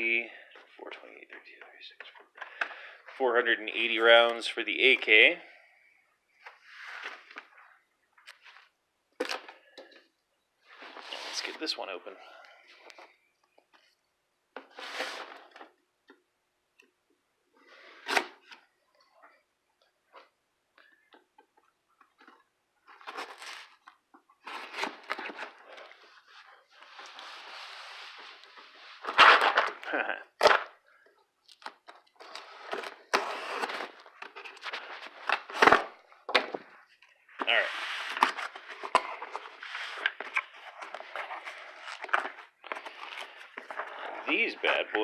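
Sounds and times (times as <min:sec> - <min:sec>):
cardboard scraping and rustling: 0:32.2 - 0:35.9, 0:37.4 - 0:45.0.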